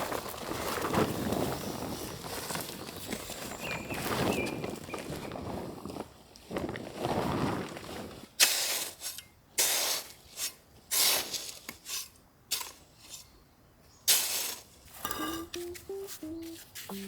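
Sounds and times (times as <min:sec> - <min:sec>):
sand scraping on brick paving: 0:00.0 - 0:04.6, 0:05.5 - 0:13.4, 0:14.1 - 0:15.0.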